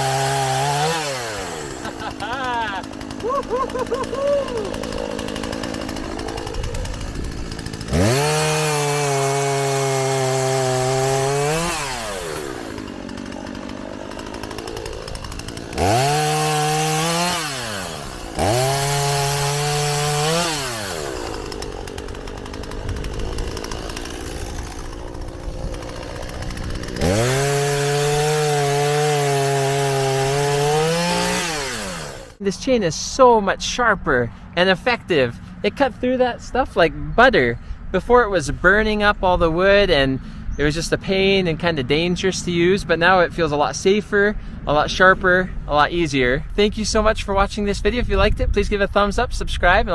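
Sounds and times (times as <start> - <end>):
chainsaw cutting wood: 0.0 - 32.4
chainsaw idling: 0.0 - 32.4.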